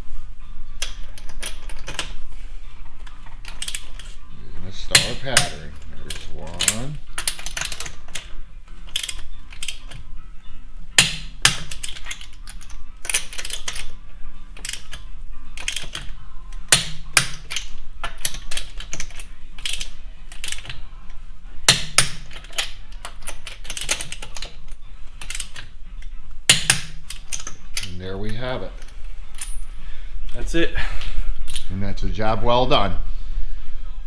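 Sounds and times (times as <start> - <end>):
torque wrench clicking off: 8.9 - 10.0, 11.0 - 13.9, 15.6 - 20.8, 21.7 - 24.6, 26.5 - 27.9
torque wrench ratchet clicks: 15.6 - 20.8.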